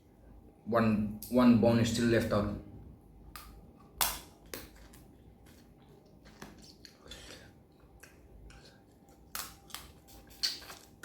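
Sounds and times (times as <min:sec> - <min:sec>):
soft chewing: 0:04.4 - 0:11.0.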